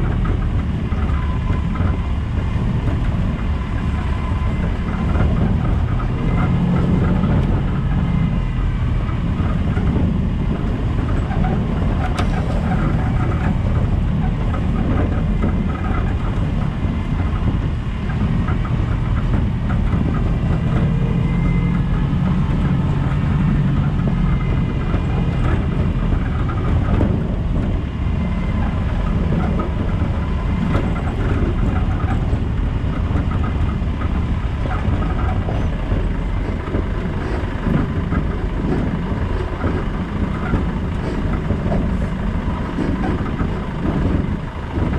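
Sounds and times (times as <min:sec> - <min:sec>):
diesel car engine running: 0:00.0 - 0:44.9
small knocks and rattles: 0:09.1 - 0:44.9.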